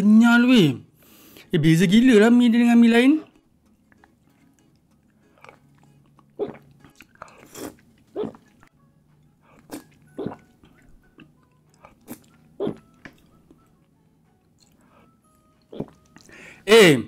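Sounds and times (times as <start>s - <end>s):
chewing: 3.2s - 13.7s, 14.4s - 16.4s
person slurping noodles: 6.4s - 8.6s, 9.4s - 10.5s, 11.7s - 12.8s.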